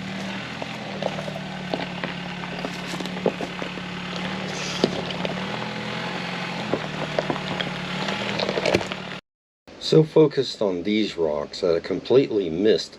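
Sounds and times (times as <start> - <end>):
rocks cracking under tyres: 0.0 - 9.2
truck engine running at low speed: 0.0 - 9.2.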